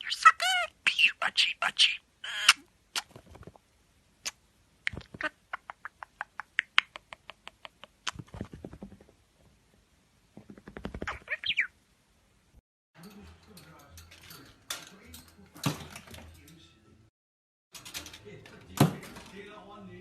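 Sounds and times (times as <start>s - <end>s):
budgie beak clicks and taps: 4.9s - 8.2s.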